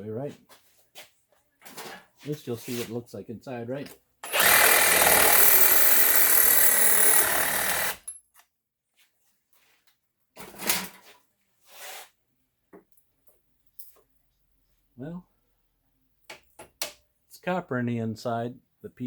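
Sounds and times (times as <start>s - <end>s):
power saw cutting metal: 4.2s - 8.0s.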